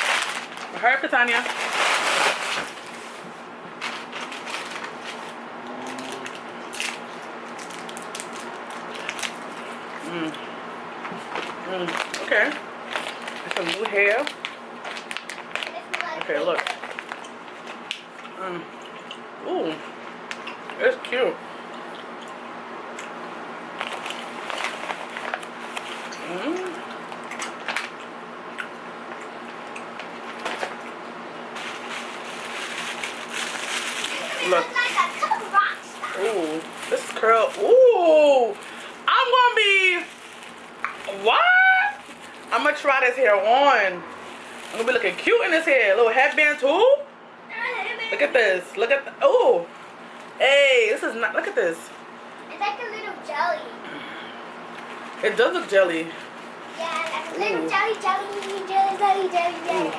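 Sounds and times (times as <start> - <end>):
packaging crackles: 0.0 - 3.1, 3.8 - 9.7, 11.3 - 18.1, 31.5 - 37.7, 39.6 - 41.2, 56.9 - 59.9
packaging rustling and crinkling: 0.0 - 9.8, 11.2 - 17.8, 23.8 - 26.2, 31.5 - 37.8, 38.4 - 42.6, 44.1 - 45.3, 56.2 - 59.9
low background hum: 0.0 - 59.9.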